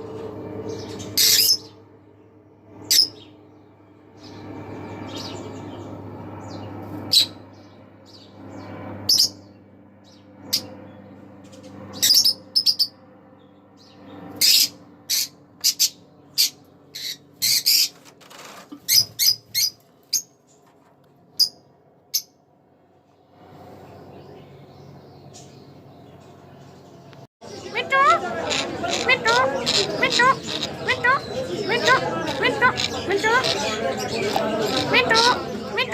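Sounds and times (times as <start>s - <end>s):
lovebirds chirping and squawking: 0.2s - 1.9s, 2.8s - 3.5s, 4.2s - 13.0s, 13.7s - 22.3s, 23.7s - 35.9s.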